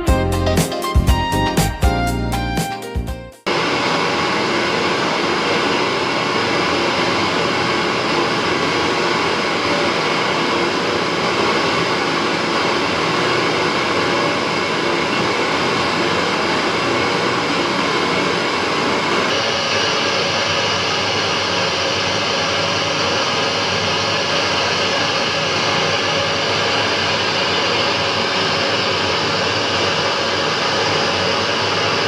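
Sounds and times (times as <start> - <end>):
music: 0.0 - 3.5.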